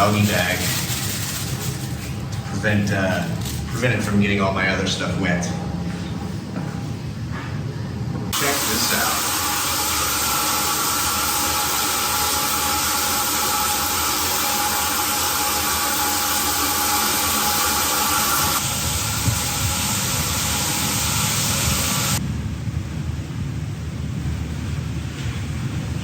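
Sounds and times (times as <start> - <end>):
shower water spraying: 0.0 - 3.7, 8.4 - 22.2.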